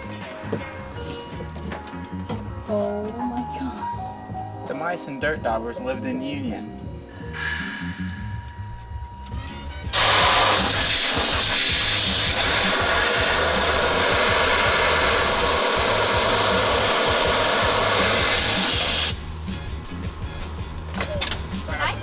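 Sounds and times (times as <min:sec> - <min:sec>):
faint background music: 0:00.0 - 0:22.0
electric blower rushing air: 0:09.9 - 0:19.3.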